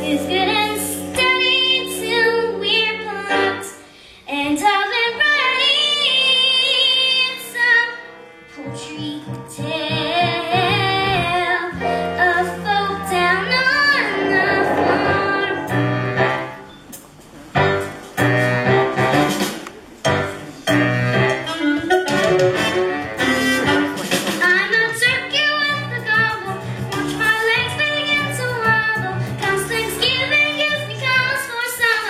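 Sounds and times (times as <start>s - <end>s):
instrumental accompaniment: 8.5s - 24.8s
high voice singing: 12.4s - 16.8s.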